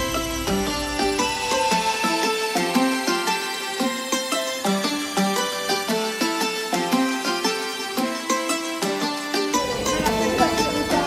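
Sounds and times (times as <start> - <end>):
outdoor noise: 0.0 - 11.0
plucked string melody: 0.0 - 11.0
voices: 9.5 - 11.0.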